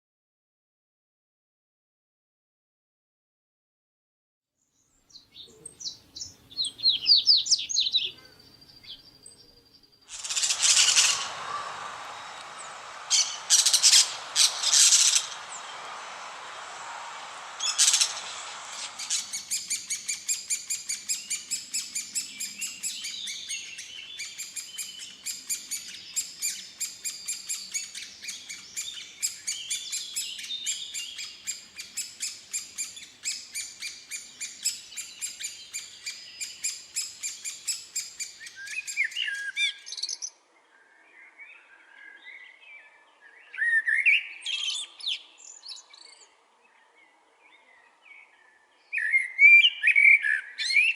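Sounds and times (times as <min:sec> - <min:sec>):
songbirds singing: 0:05.1 - 0:32.5.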